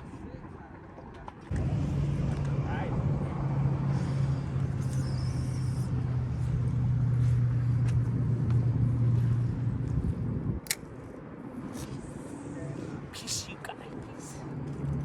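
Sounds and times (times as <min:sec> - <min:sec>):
sharp click: 0:10.6 - 0:10.9.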